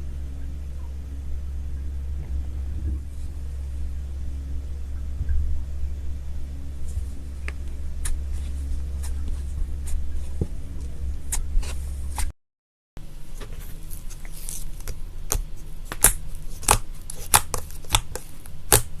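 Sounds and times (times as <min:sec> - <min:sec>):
steady low rumble: 0:00.0 - 0:12.3
slime crackling and popping: 0:13.4 - 0:19.0.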